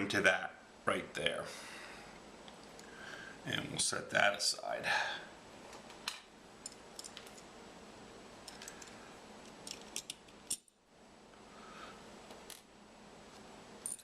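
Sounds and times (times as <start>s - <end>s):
small metal parts clicking: 6.1s - 7.4s, 8.5s - 10.7s.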